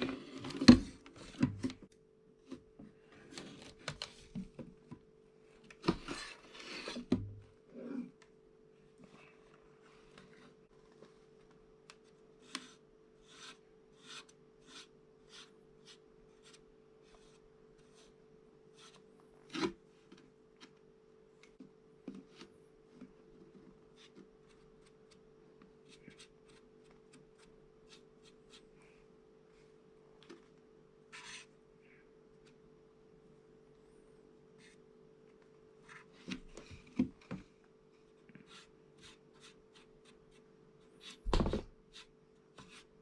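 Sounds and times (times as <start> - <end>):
faint steady hum: 0.0 - 43.0
knock: 41.3 - 41.7.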